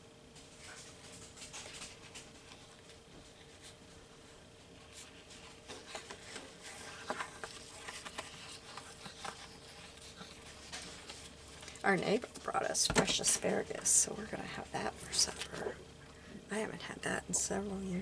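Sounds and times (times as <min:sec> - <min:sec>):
faint steady hum: 0:00.0 - 0:18.0
paper rustling and tapping: 0:04.9 - 0:13.4.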